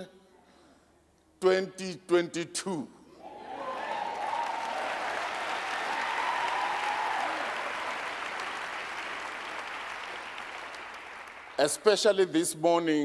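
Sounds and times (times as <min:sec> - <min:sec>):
congregation applauding: 0:03.2 - 0:12.0.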